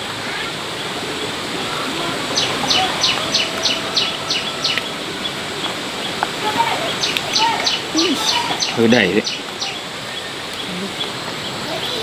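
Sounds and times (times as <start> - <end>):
background hiss: 0.0 - 12.0
bird calling sharp falling notes: 1.6 - 9.8.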